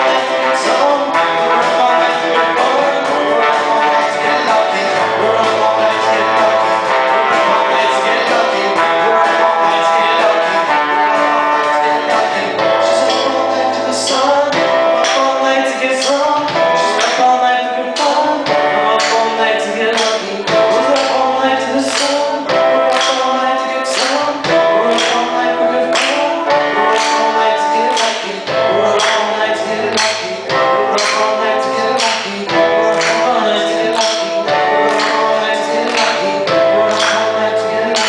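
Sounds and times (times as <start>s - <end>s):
person singing: 0.0s - 38.0s
regular drum beat: 0.0s - 38.0s
sustained instrumental chords: 0.0s - 38.0s.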